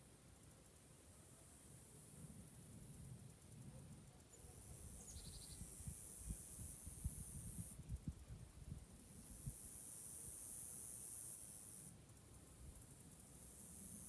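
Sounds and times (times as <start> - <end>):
high steady hiss: 0.0 - 14.0.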